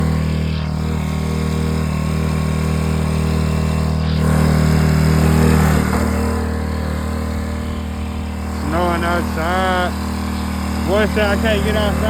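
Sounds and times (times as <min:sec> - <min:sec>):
atv engine running and revving: 0:00.0 - 0:12.0.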